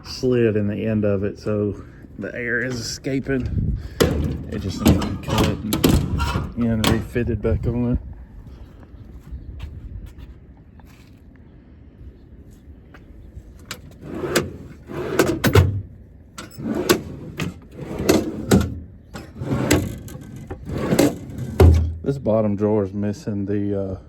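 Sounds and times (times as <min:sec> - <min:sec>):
metal drawers knocking and rattling: 0:02.2 - 0:07.2, 0:13.6 - 0:22.1.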